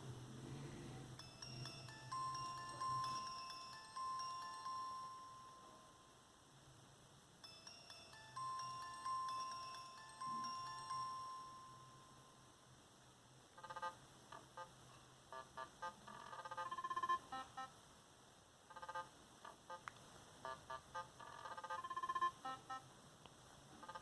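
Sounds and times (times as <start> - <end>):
electronic phone ringtone melody: 1.2 - 6.2, 7.4 - 12.6, 13.6 - 14.7, 15.3 - 17.7, 18.7 - 19.1, 20.4 - 22.9, 23.8 - 24.0.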